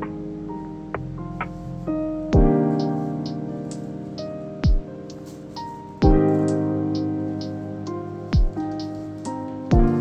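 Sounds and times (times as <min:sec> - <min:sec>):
electric piano chords: 0:00.0 - 0:10.0
deep drum hit: 0:02.4 - 0:02.6, 0:04.6 - 0:04.9, 0:06.0 - 0:06.3, 0:08.4 - 0:08.6, 0:09.7 - 0:10.0.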